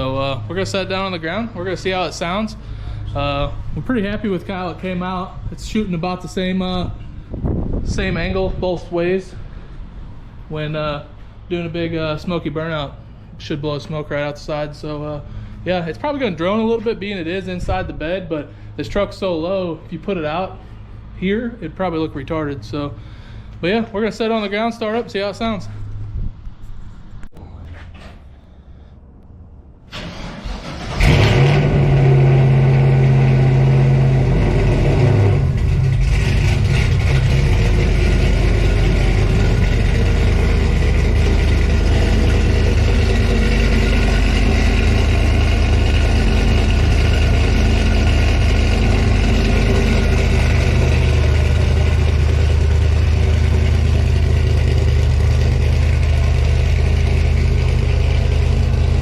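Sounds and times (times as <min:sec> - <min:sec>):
truck engine starting and idling: 0:29.8 - 0:59.0.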